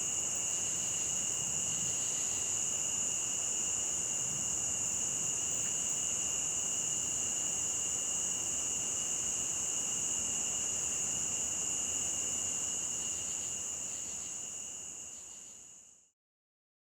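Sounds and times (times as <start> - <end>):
crickets chirping: 0.0 - 16.1.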